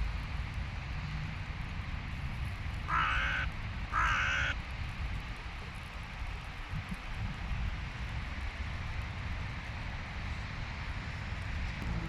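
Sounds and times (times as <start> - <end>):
crow cawing: 2.9 - 4.6
steady low rumble: 10.8 - 12.0.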